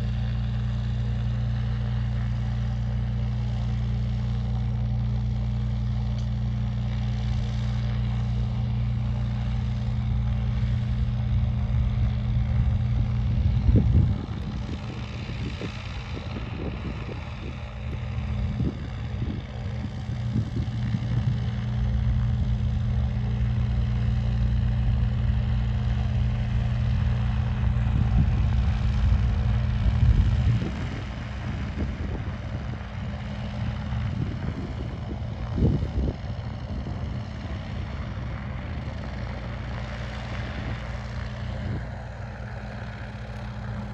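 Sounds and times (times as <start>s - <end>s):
low engine drone: 0.0s - 43.9s
wind gusting on microphone: 11.1s - 23.8s, 24.7s - 39.0s.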